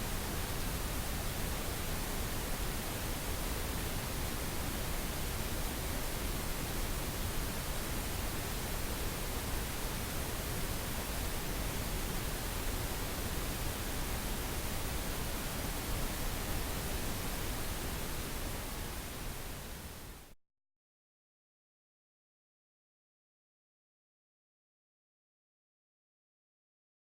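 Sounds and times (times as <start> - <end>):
pink noise hiss: 0.0 - 20.4.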